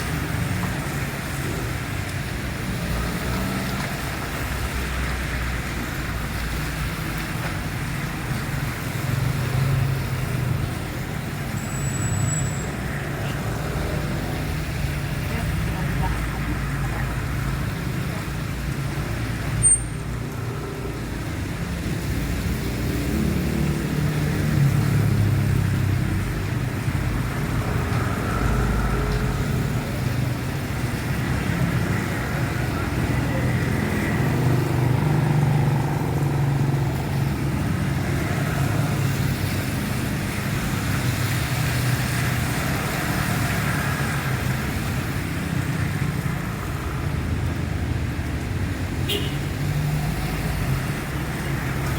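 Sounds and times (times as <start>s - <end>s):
rain and wet road hiss: 0.0s - 51.9s
engines rumbling past: 20.2s - 51.9s.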